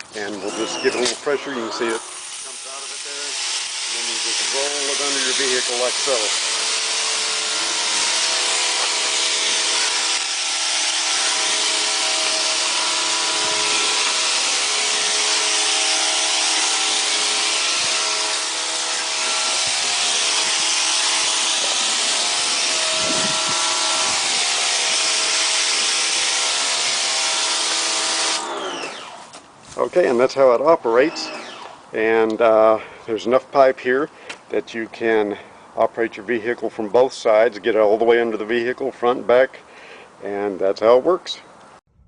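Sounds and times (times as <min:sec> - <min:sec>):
pressure washer spraying hiss: 0:00.5 - 0:06.5, 0:07.9 - 0:28.5.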